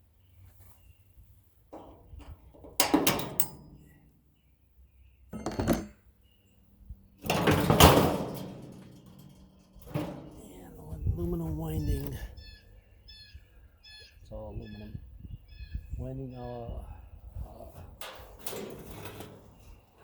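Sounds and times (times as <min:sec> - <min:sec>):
metal parts clanking: 0:01.8 - 0:03.9, 0:05.4 - 0:06.0, 0:07.2 - 0:10.5.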